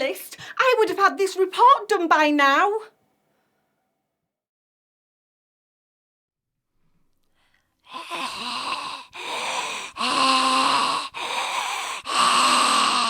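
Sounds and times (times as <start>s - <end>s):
person sighing and groaning: 7.9s - 13.0s.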